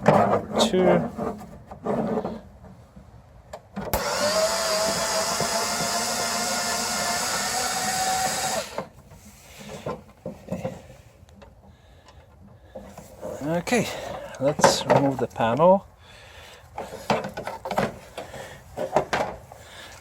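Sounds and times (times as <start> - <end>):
power driver motor whirring: 3.9 - 8.9.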